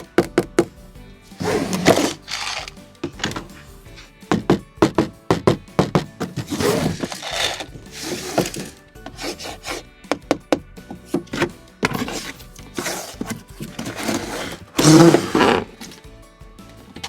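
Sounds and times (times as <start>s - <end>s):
scraping and rubbing: 1.3s - 4.1s, 6.2s - 9.8s, 11.0s - 16.0s
toy truck clicking on wood: 1.8s - 2.8s.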